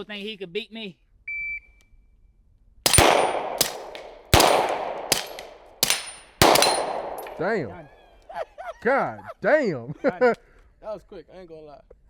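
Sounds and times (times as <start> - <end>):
steel target ringing: 2.9 - 7.7
handgun shots: 2.9 - 7.8.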